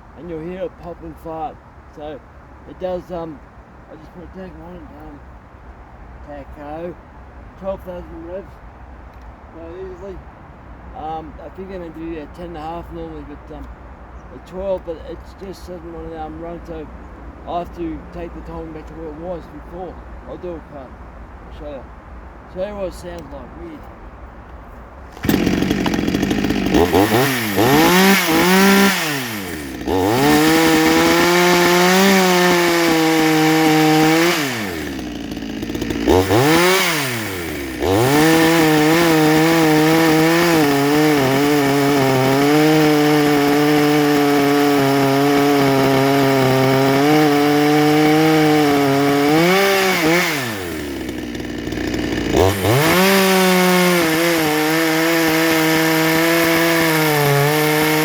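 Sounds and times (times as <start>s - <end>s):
chainsaw revving and cutting wood: 25.1s - 58.0s.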